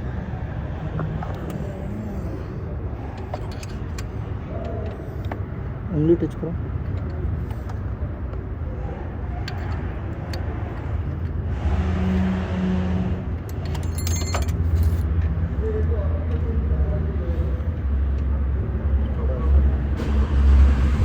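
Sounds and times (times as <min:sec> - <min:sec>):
vehicle engine rumbling: 0:00.0 - 0:21.0
light metallic clinks: 0:13.5 - 0:15.0.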